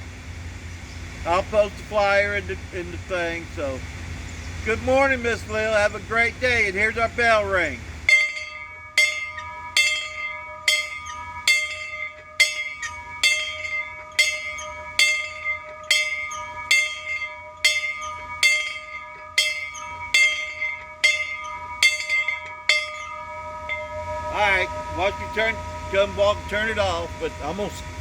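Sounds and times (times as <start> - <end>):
bell ringing with clear tones: 8.1 - 27.8.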